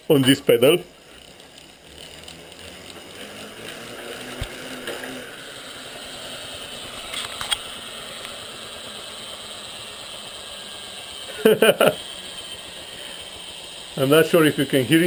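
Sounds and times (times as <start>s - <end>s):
bicycle wheel whirring: 0.0s - 15.0s.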